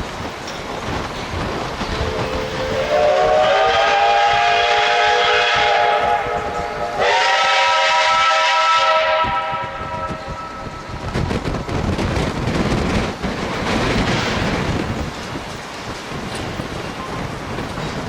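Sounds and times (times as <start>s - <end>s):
steam locomotive whistle: 2.0s - 11.0s.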